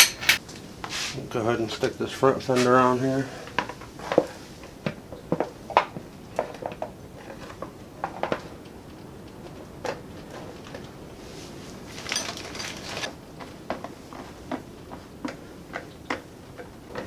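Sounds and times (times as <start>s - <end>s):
metal tools clinking: 0.0s - 0.4s, 12.0s - 13.1s
scraping rustle: 0.0s - 1.4s, 11.2s - 13.1s.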